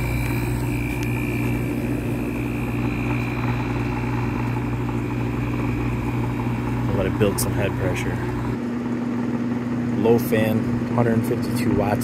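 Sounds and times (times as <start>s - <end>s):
faint high whine: 0.0s - 8.6s
air conditioner humming: 0.0s - 12.0s.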